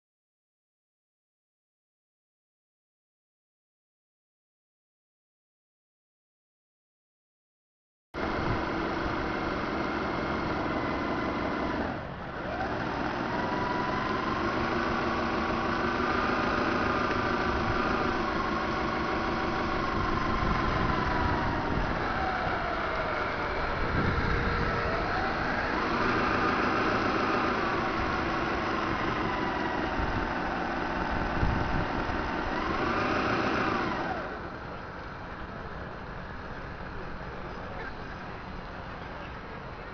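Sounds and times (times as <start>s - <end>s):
whining tones rising and falling: 8.2s - 37.1s
model boat motor hum: 8.2s - 39.9s.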